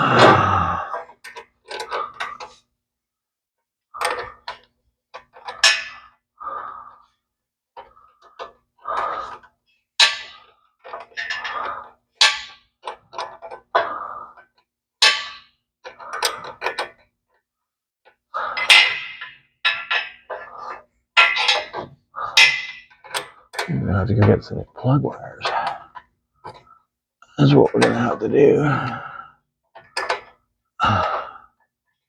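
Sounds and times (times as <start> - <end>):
wrench clinking on metal bolts: 12.2 - 13.5, 18.6 - 20.3, 21.2 - 21.8.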